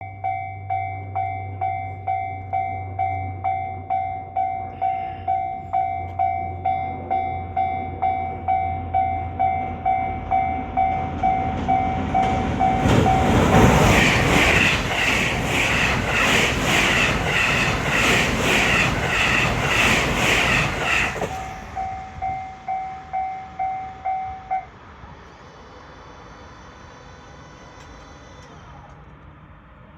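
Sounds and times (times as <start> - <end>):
level-crossing bell dinging: 0.0 - 13.4, 21.4 - 24.7
train wheels clattering: 9.9 - 23.2.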